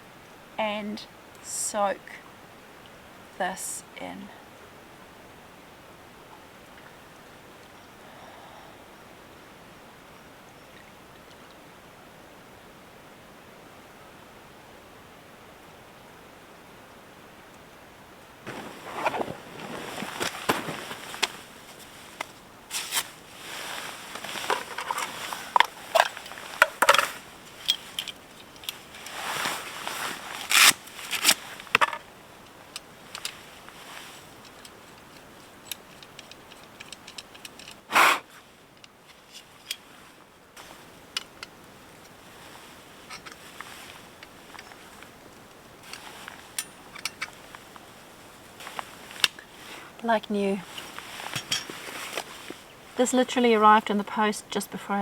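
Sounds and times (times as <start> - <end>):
handling scrapes: 18.5 - 32.0, 50.6 - 52.8
handling rustles: 18.5 - 32.1, 32.7 - 53.7.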